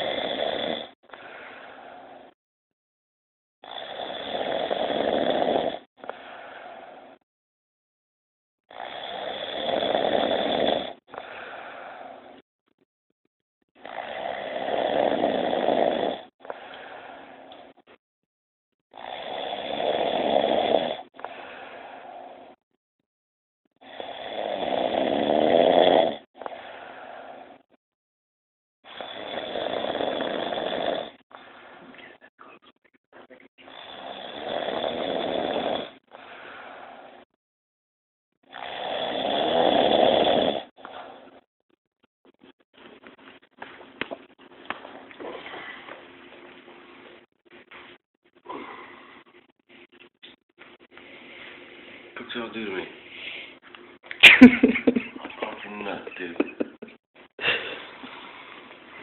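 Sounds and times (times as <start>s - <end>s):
person snoring: 0.0s - 2.4s, 3.6s - 7.2s, 8.7s - 12.4s, 13.8s - 17.4s, 19.0s - 22.6s, 23.8s - 27.6s, 28.9s - 31.2s, 33.6s - 37.3s, 38.5s - 41.2s, 48.4s - 49.3s
soft breath: 1.1s - 2.4s, 6.0s - 7.2s, 11.1s - 12.4s, 16.4s - 17.8s, 21.1s - 22.6s, 26.4s - 27.7s, 36.1s - 37.3s, 44.8s - 46.1s, 48.4s - 49.8s, 50.8s - 52.2s, 53.0s - 53.7s.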